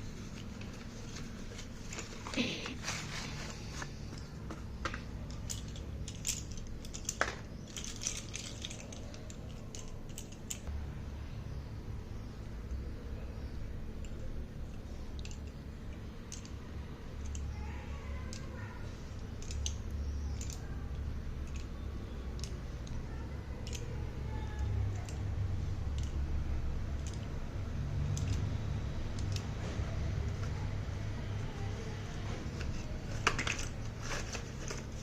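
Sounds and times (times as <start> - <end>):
steady low hum: 0.0 - 35.0
sharp clicks and taps of pencils: 14.0 - 16.6, 17.2 - 18.6, 19.2 - 27.4, 28.0 - 30.6.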